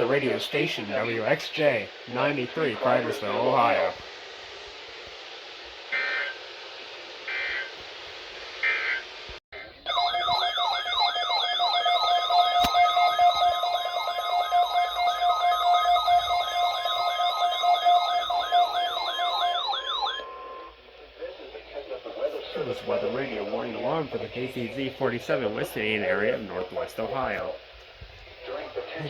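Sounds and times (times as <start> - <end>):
buzzy digital data bursts: 0.0 - 4.0
electronic warbling alarm: 9.9 - 20.8
steady electronic tone: 10.2 - 20.9.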